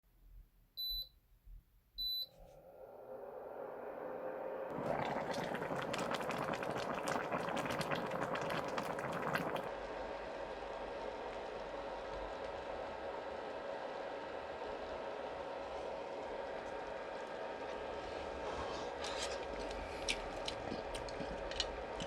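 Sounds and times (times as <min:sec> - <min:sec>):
pot hissing and bubbling: 0:02.8 - 0:09.7.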